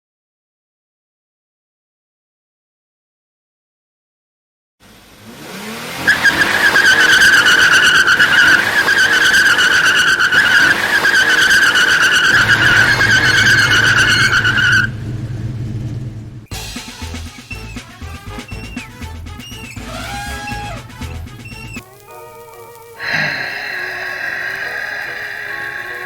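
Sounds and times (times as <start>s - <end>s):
car tyres screeching: 4.8s - 16.5s, 17.1s - 22.0s, 22.9s - 26.0s
low rumble: 12.4s - 21.8s.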